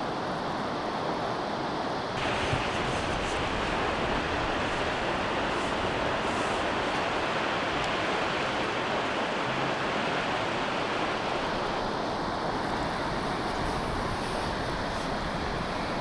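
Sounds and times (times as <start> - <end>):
waterfall rushing: 2.2 - 11.6.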